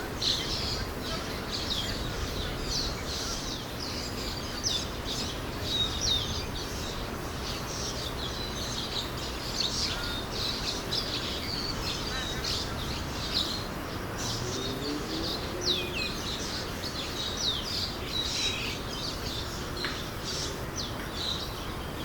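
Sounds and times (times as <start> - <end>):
flock of birds chirping: 0.0 - 22.0.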